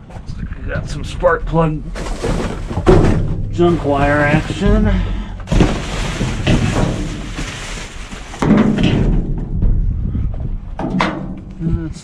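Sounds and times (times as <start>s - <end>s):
knocks and scraping: 0.0s - 11.6s
scrap metal clattering: 1.9s - 9.4s.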